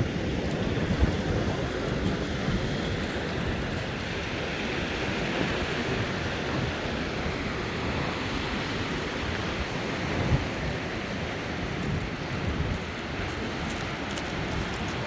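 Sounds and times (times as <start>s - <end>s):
sea surf washing on shore: 0.0s - 15.0s
wind buffeting microphone: 0.0s - 15.0s.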